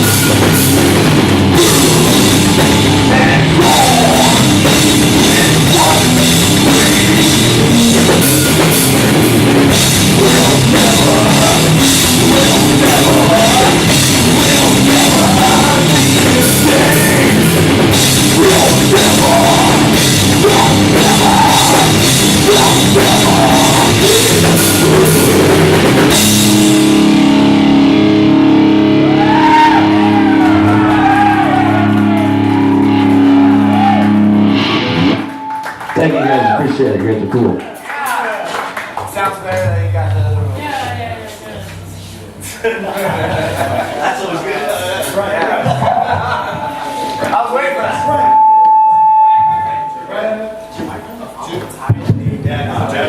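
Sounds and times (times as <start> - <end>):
drum kit with cymbals: 0.0 - 27.8
live rock band playing: 0.0 - 36.0
electric guitars: 0.0 - 36.8.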